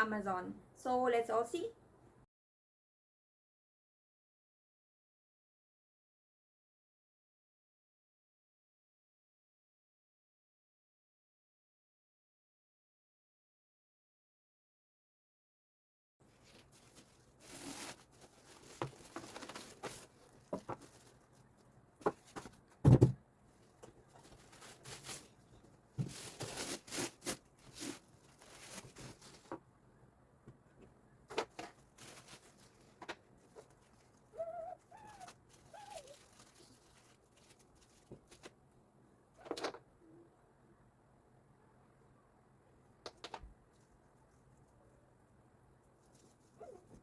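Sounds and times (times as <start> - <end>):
packaging rustling and scraping: 16.3 - 23.0, 23.6 - 29.6, 31.3 - 38.6.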